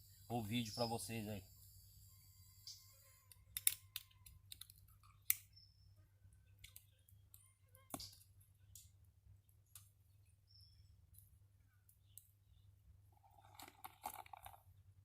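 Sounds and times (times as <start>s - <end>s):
oyster shells clicking: 3.6s - 5.4s, 13.4s - 14.6s.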